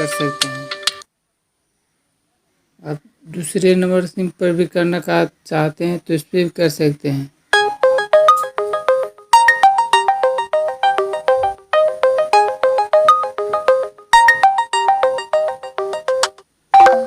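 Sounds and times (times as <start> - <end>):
electronic ringtone melody: 7.6 - 17.0.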